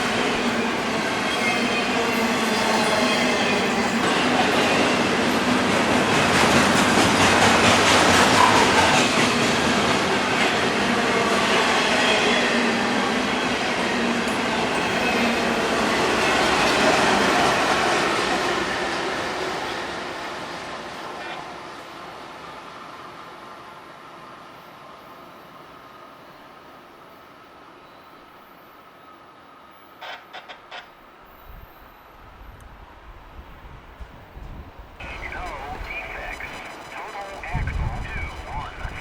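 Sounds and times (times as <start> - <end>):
freight train wheels clattering: 3.2 - 10.5.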